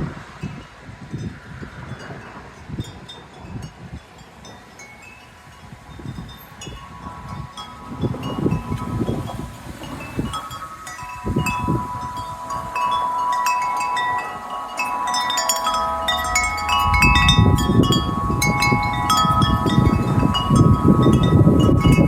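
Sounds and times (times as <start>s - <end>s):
wind gust on microphone: 0.0s - 22.0s
wind chimes ringing: 0.5s - 22.0s.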